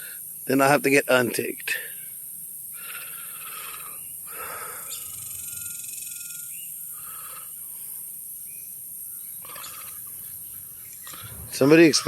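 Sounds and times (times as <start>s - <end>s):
steady high hiss: 0.0s - 12.0s
faint animal calls: 2.0s - 8.2s, 9.0s - 12.0s.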